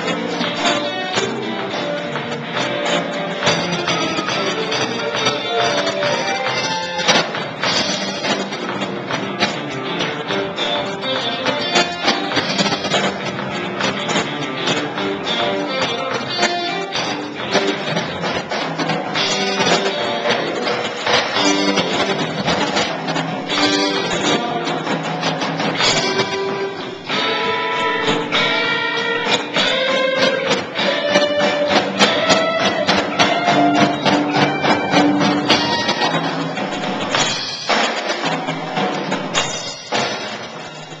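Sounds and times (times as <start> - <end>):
guitar: 0.0 - 41.0
live band music: 0.0 - 41.0.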